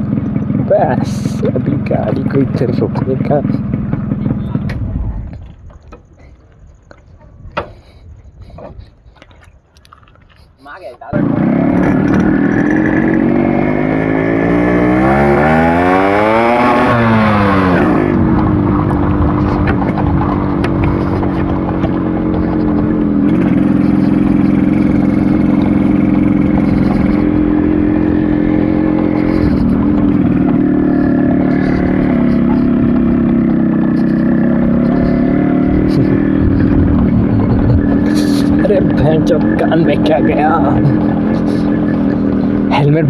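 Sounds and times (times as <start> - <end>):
two-stroke motorcycle engine revving: 0.0 - 5.5, 11.1 - 43.0.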